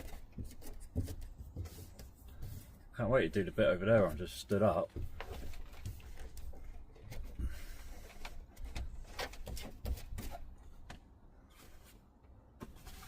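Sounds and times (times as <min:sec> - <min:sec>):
knocks and taps inside a van: 0:03.8 - 0:06.7, 0:08.6 - 0:11.1.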